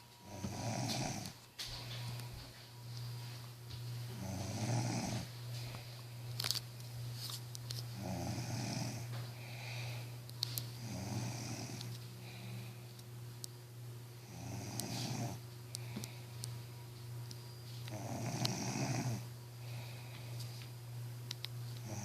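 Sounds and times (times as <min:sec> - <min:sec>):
steady low hum: 0:00.0 - 0:22.0
slow snoring: 0:00.2 - 0:01.4, 0:04.1 - 0:05.8, 0:08.0 - 0:10.1, 0:10.8 - 0:12.7, 0:14.2 - 0:16.0, 0:17.9 - 0:19.8, 0:21.8 - 0:22.0.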